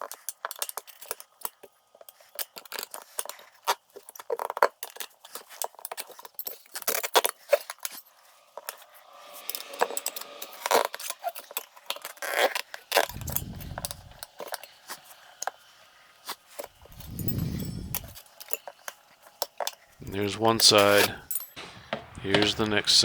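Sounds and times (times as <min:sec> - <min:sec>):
metal tire tools clinking on rim: 0:00.0 - 0:15.6, 0:16.3 - 0:23.0
brief low rumble: 0:13.1 - 0:14.2.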